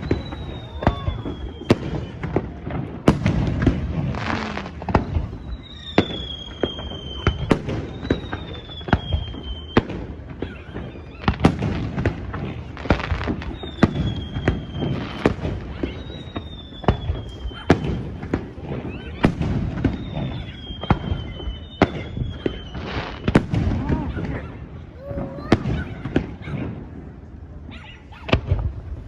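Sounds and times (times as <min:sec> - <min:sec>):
firework whistles: 0:00.0 - 0:27.0
firework crackling: 0:00.0 - 0:29.0.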